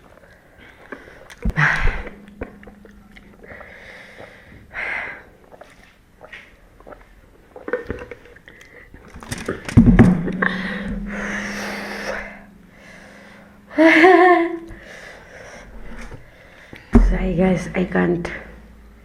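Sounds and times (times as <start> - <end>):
chewing: 5.4 - 9.1.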